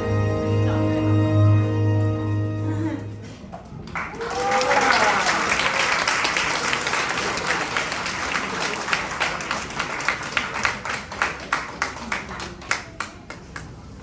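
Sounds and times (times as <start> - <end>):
audience applauding: 3.4 - 14.0.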